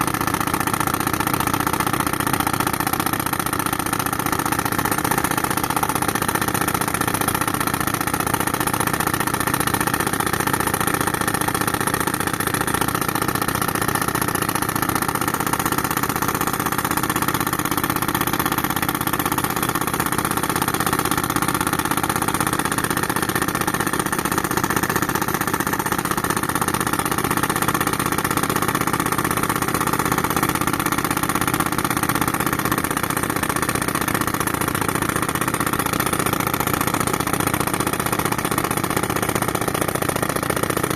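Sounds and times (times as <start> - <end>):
tractor engine driving compressor: 0.0 - 40.9.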